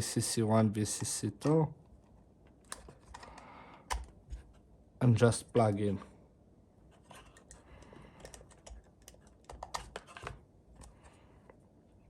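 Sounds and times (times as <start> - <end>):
plastic device clicks and taps: 2.6 - 4.4.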